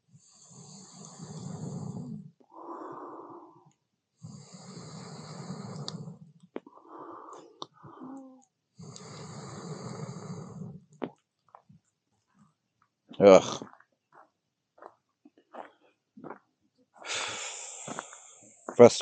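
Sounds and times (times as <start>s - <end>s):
breath drawn in: 17.0s - 18.4s
person blowing puffs of air: 17.0s - 18.4s.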